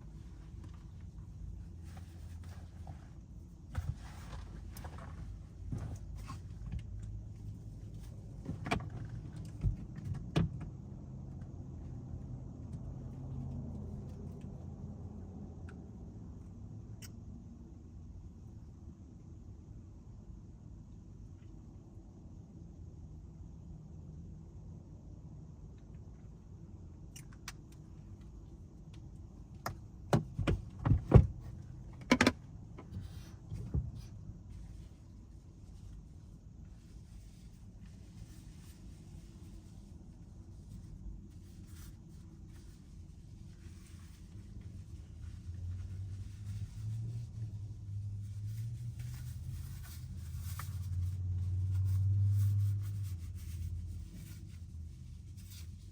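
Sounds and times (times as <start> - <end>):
engine and road hum: 0.0 - 55.9
car cabin rumble: 29.6 - 34.4.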